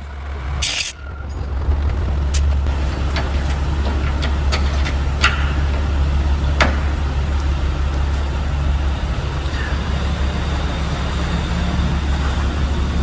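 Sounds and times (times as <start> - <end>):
angle grinder cutting steel: 0.5 - 1.4
sharp metallic click: 0.6 - 1.0.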